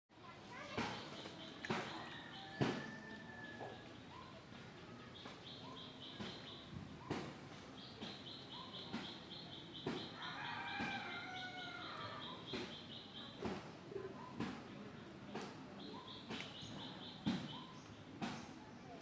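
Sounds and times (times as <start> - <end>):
birds chirping: 7.7 - 13.4.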